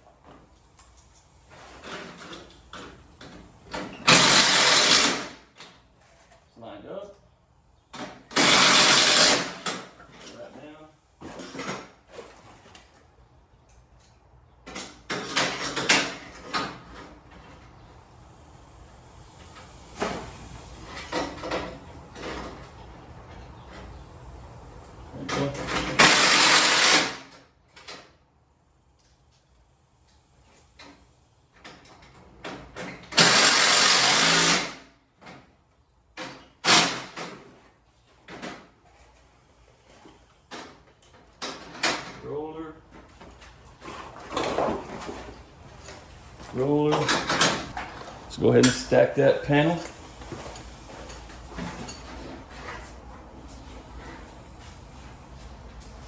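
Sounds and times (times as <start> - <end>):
power driver bursts: 4.0 - 5.4, 8.3 - 9.6
hardware clicks and knocks: 44.3 - 48.9.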